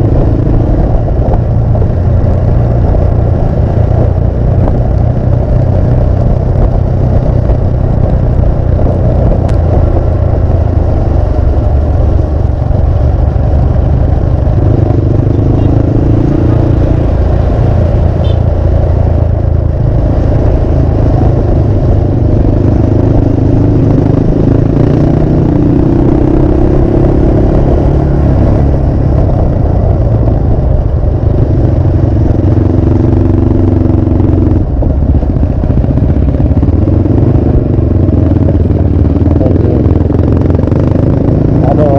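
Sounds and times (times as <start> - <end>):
motorcycle engine running: 0.0 - 41.9
steady low rumble: 0.0 - 41.9.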